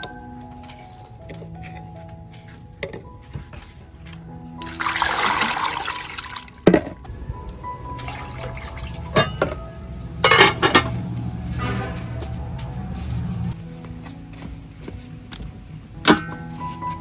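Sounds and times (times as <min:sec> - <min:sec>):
background music: 0:00.0 - 0:17.0
water splashing and pouring: 0:04.6 - 0:07.1, 0:07.9 - 0:09.4.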